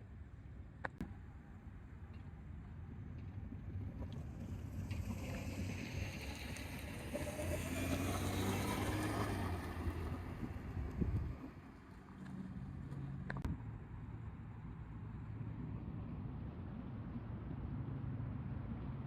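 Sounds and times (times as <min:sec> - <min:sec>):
vehicle passing by: 0:04.2 - 0:13.5.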